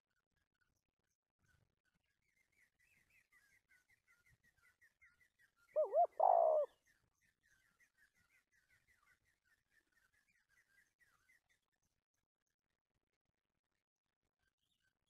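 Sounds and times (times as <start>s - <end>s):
small birds chirping: 5.7s - 6.8s.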